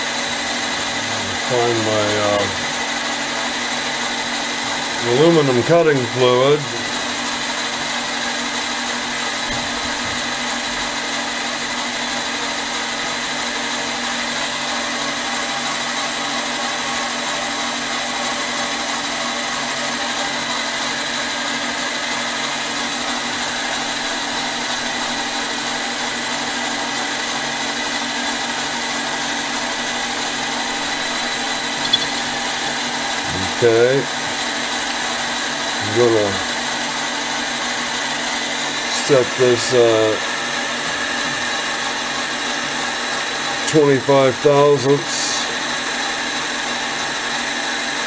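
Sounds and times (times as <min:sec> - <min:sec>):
mini lathe whining: 0:00.0 - 0:43.8.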